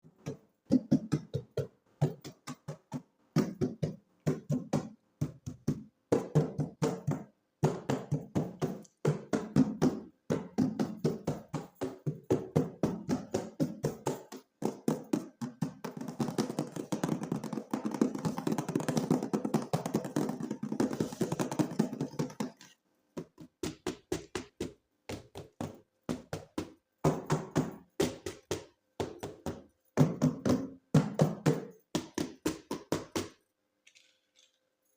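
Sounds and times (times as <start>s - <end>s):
toys and plastic packaging clatter: 33.8s - 34.7s.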